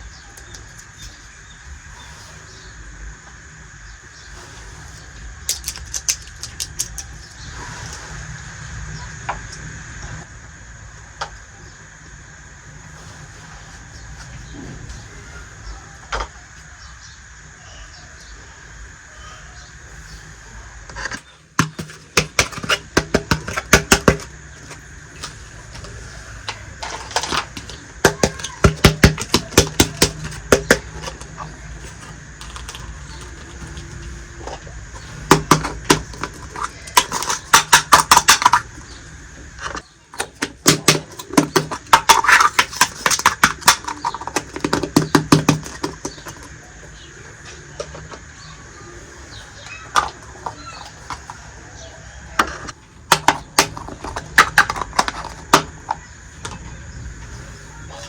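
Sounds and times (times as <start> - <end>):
plastic toys clicking and tapping: 0.0 - 1.3, 5.4 - 8.0, 20.9 - 48.5, 49.6 - 51.7, 52.3 - 56.8
faint steady hum: 0.0 - 58.0.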